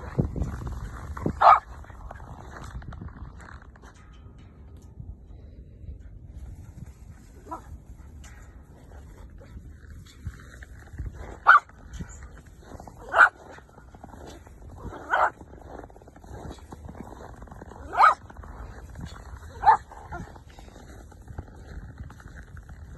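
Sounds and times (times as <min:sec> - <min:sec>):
dog barking: 0:01.4 - 0:01.7, 0:11.4 - 0:11.7, 0:13.0 - 0:13.4, 0:14.9 - 0:15.4, 0:17.8 - 0:18.2, 0:19.5 - 0:20.3.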